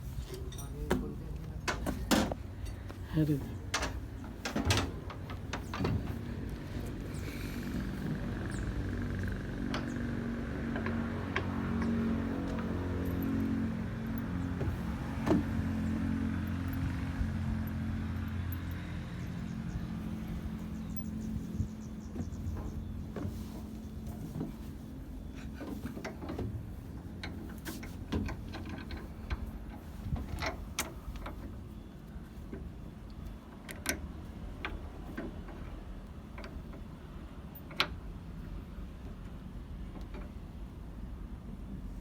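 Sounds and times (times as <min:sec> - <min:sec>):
low steady rumble: 0:00.0 - 0:33.4
hand tools tapping on metal: 0:00.3 - 0:16.9.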